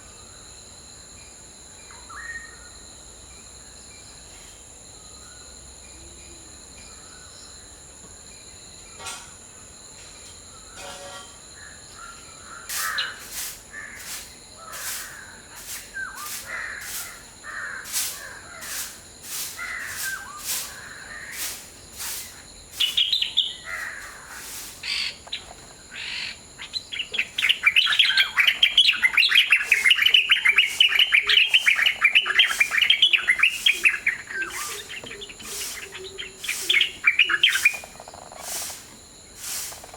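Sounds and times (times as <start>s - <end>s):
high-pitched insect tones: 12.2s - 39.9s
short harsh bird calls: 12.7s - 39.9s
bird chattering burst: 27.0s - 38.8s.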